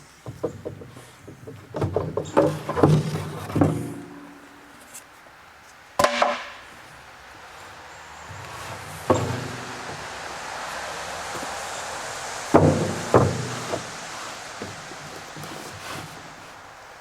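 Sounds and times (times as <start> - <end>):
wooden boards knocking together: 0.2 - 4.9, 6.0 - 6.8, 8.3 - 17.0
sharp wooden knock: 6.0 - 6.6.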